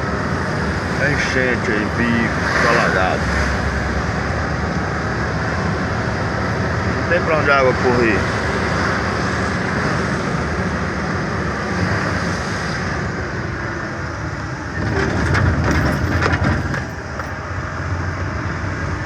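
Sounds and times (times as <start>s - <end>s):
truck engine and road rumble: 0.0s - 19.0s.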